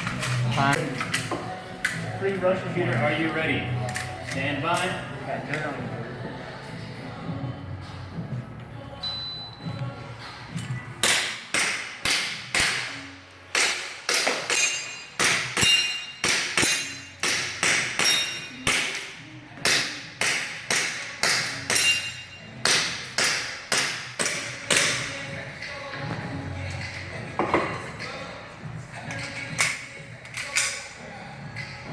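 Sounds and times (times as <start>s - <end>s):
pellets pinging on steel targets: 11.0s - 25.1s.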